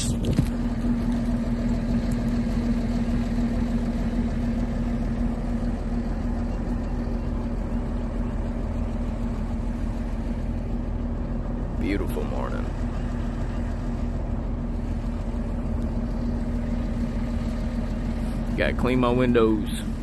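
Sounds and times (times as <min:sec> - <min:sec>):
diesel engine idling: 0:00.0 - 0:20.0.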